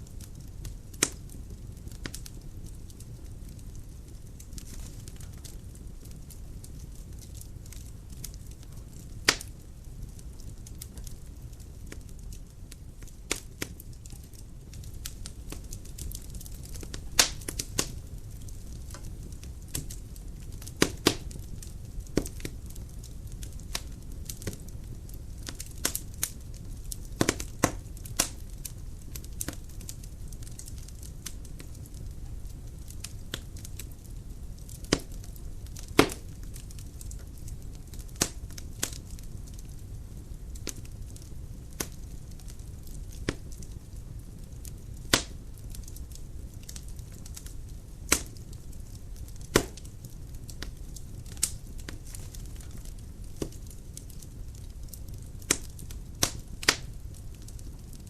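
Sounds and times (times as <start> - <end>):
fire crackling and popping: 0.0 - 58.0
low rumble of flame: 0.0 - 58.0
loud wood snaps: 16.0 - 17.9, 36.0 - 36.2, 45.1 - 45.3, 48.1 - 48.4, 49.5 - 49.9.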